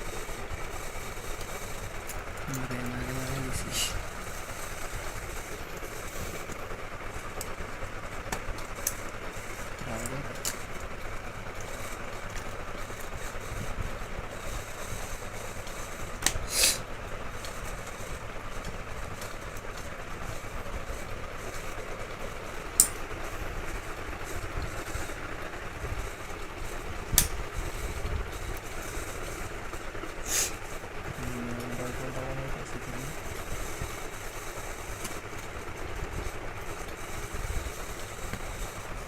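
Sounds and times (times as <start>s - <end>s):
sharp clicks and knocks: 15.6s - 16.5s, 21.5s - 25.2s, 26.2s - 27.6s.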